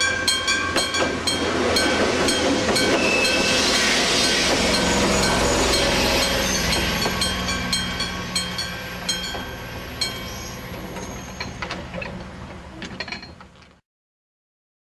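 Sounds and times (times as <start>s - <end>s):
crossing bell gong striking: 0.0s - 10.3s
train rumbling: 0.0s - 13.8s.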